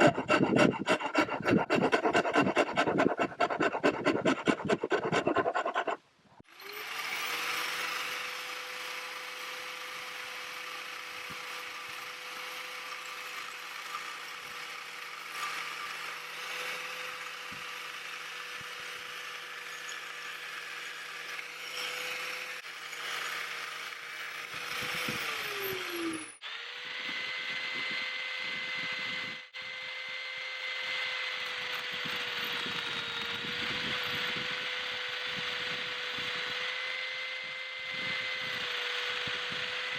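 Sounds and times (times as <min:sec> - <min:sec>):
angle grinder grinding steel: 0:00.0 - 0:06.0.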